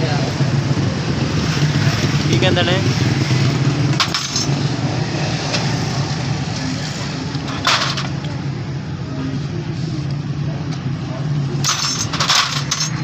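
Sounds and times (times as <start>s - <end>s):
motorcycle engine running: 0.1s - 8.3s.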